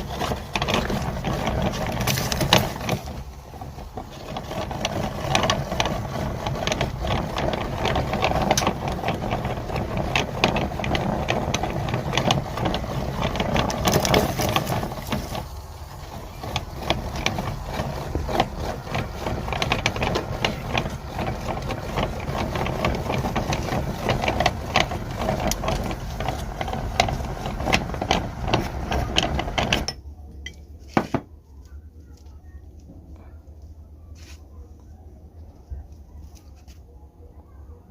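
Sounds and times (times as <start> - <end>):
meat grinder motor running: 0.0 - 29.9.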